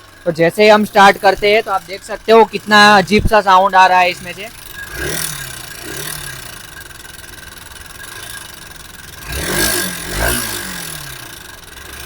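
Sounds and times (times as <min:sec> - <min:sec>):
throttle blips: 0:00.0 - 0:08.8
engine ticking noise: 0:00.0 - 0:12.0
motorcycle engine idling: 0:00.0 - 0:12.0.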